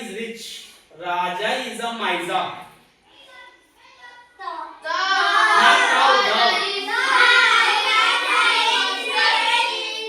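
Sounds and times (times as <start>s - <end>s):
children reciting in chorus: 3.1s - 10.0s.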